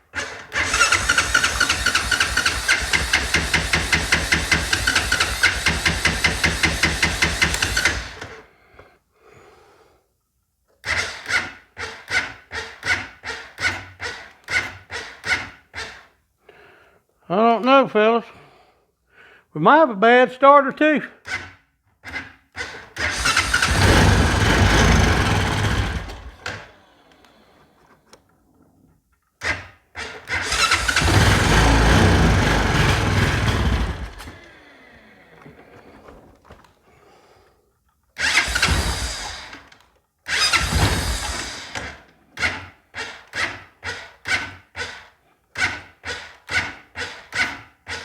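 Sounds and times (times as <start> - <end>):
electric starter cranking engine: 0.1 - 8.5, 10.8 - 16.1, 22.1 - 28.1, 29.4 - 36.2, 38.2 - 48.0.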